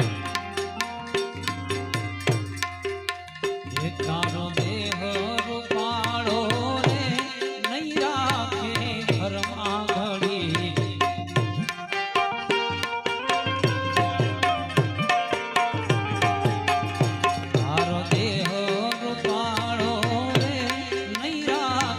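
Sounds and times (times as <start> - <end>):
ornamented melodic line: 0.0 - 7.2
hand drums beating: 0.0 - 21.9.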